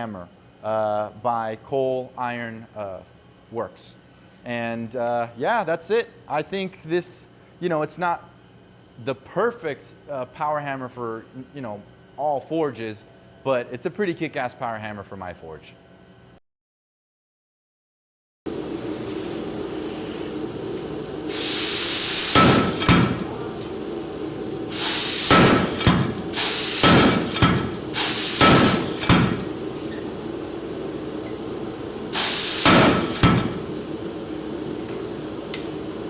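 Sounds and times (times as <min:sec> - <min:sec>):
hiss of air: 0:18.5 - 0:30.0, 0:32.1 - 0:33.8
steady hum: 0:18.5 - 0:36.0
power hammer striking rapidly: 0:21.3 - 0:23.5, 0:24.7 - 0:29.6, 0:32.1 - 0:33.8.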